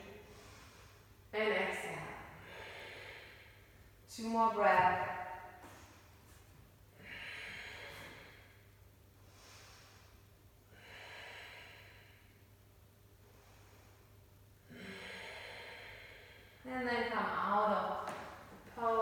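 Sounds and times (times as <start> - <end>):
person breathing slowly: 2.4 - 3.8, 7.0 - 12.5, 13.2 - 16.6.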